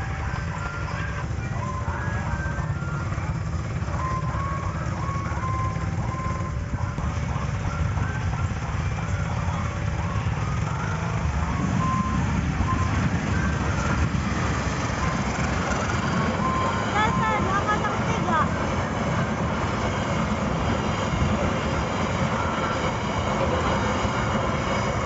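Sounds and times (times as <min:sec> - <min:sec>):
train low rumble: 0:00.0 - 0:25.0
short beeping tune: 0:11.5 - 0:20.3.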